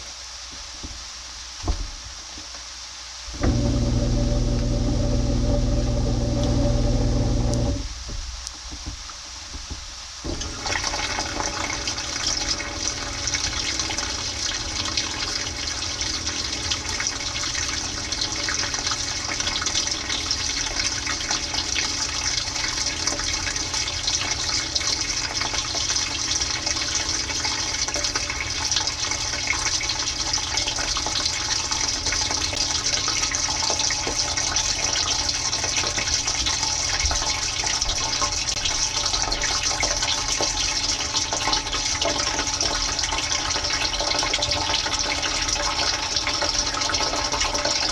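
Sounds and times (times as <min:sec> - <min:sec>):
low pump hum: 0:03.4 - 0:09.0.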